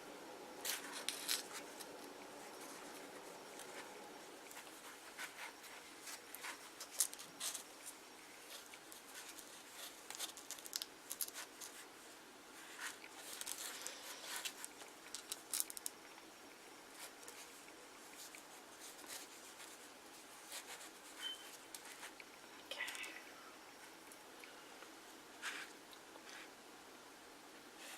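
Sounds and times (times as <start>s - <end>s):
paper rustling: 0.6s - 3.9s, 4.5s - 11.9s, 12.6s - 15.9s.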